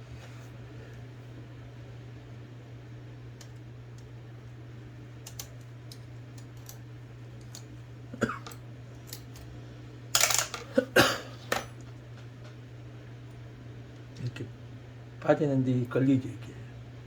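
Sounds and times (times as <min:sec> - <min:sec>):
steady low hum: 0:00.0 - 0:17.0
typewriter parts clicking and clattering: 0:10.1 - 0:10.7.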